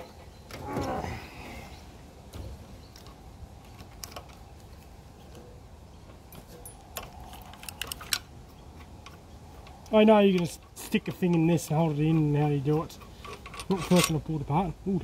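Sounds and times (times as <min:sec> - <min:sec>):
metallic clicks and clinks of tools: 0:06.3 - 0:08.3, 0:09.0 - 0:14.3.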